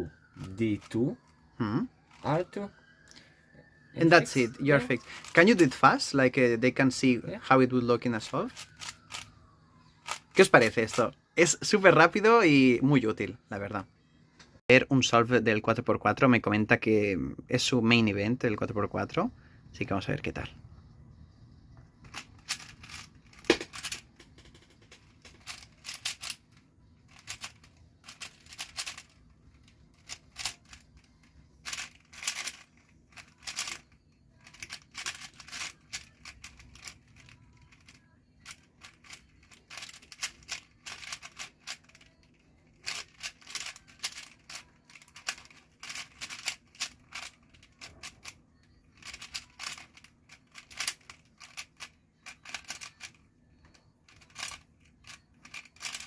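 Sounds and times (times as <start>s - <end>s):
puzzle cube plastic clicking: 8.5s - 11.1s, 22.0s - 56.0s.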